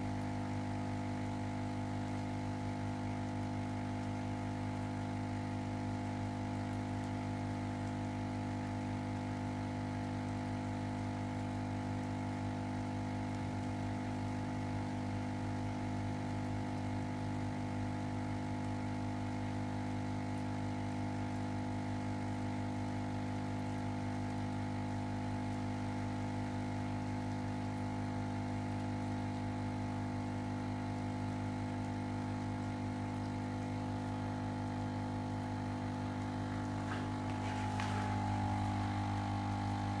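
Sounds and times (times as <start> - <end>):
ozone generator electrical hum: 0.0 - 40.0.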